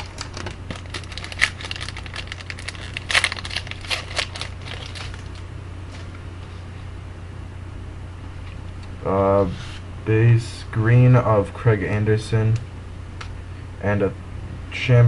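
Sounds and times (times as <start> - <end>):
card pack wrapper crinkling and tearing: 0.0 - 5.4
low steady hum: 0.0 - 15.0.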